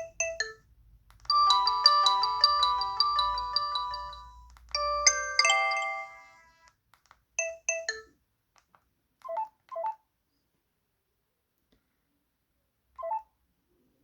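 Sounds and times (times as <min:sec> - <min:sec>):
beeping ringtone melody: 0:00.0 - 0:00.6, 0:01.3 - 0:06.7
short chiming melody: 0:01.3 - 0:06.5.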